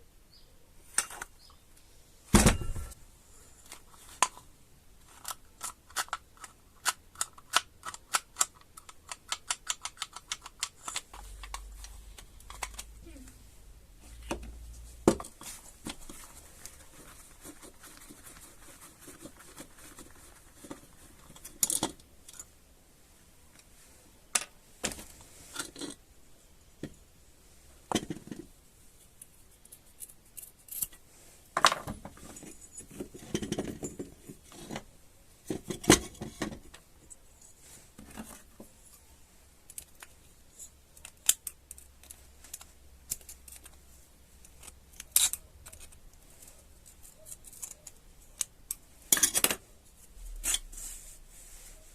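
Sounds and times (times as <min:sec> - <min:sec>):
small hard parts being handled: 0:03.6 - 0:13.0, 0:27.9 - 0:31.0, 0:39.7 - 0:49.6
tools clicking and tapping: 0:05.2 - 0:12.9.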